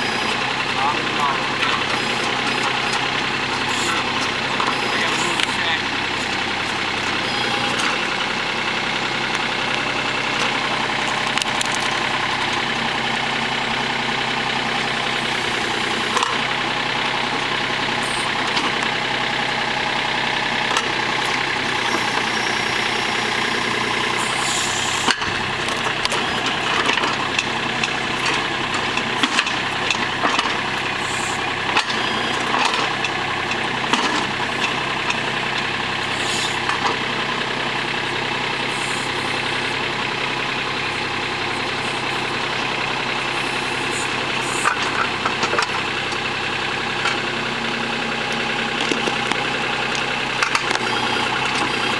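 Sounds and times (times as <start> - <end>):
diesel tractor engine running: 0.0 - 51.9.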